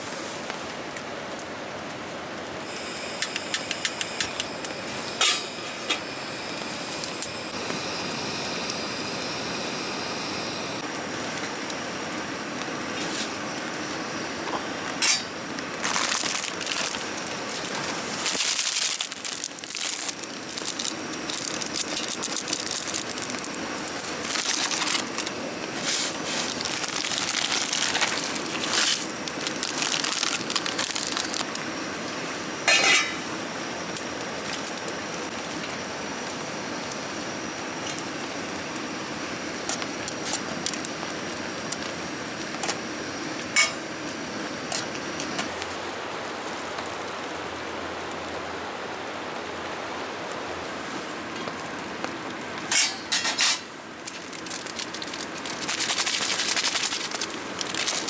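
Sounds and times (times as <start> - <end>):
steady hiss: 1.5 - 58.0
crinkling and rustling: 15.8 - 31.6, 52.8 - 58.0.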